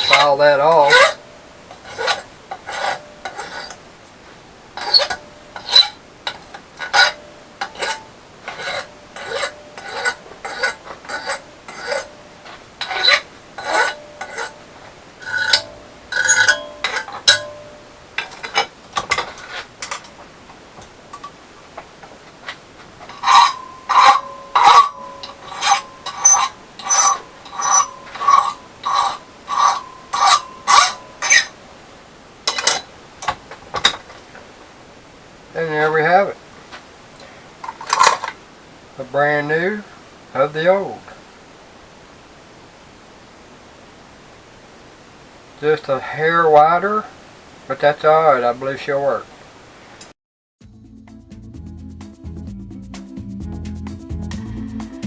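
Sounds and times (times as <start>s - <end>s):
file rasping on steel rod: 0.0s - 1.2s, 1.8s - 3.8s, 4.8s - 6.0s, 6.8s - 12.1s, 12.8s - 14.6s, 15.2s - 17.5s, 23.1s - 31.5s
metal ringing: 0.0s - 3.8s, 15.2s - 20.2s, 23.1s - 31.6s.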